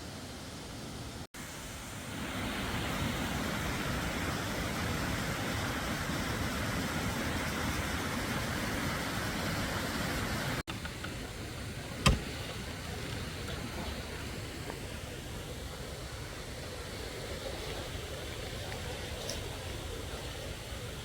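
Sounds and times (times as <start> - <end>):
waterfall rushing: 1.4 - 10.6.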